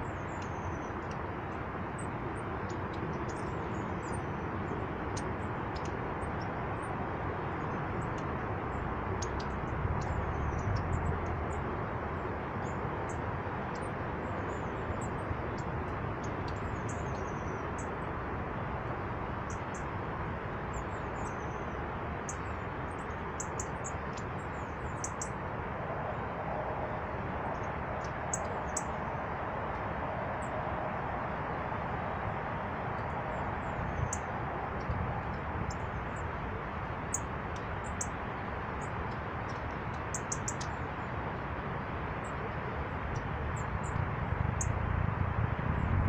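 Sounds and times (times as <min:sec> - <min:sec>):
small birds chirping: 0:00.0 - 0:18.0, 0:20.7 - 0:25.4, 0:27.4 - 0:29.1, 0:37.1 - 0:38.2, 0:38.8 - 0:41.0
steady rushing noise: 0:00.0 - 0:46.0.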